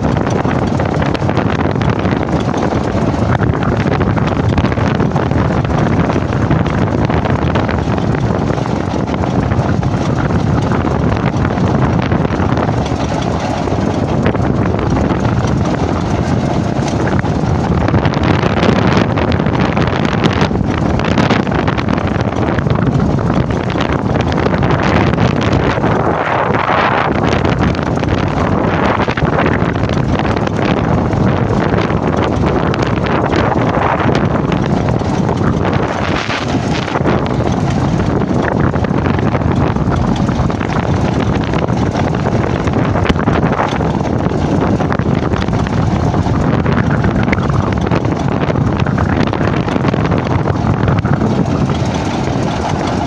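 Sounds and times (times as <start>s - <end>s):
strong wind buffeting microphone: 0.0s - 53.0s.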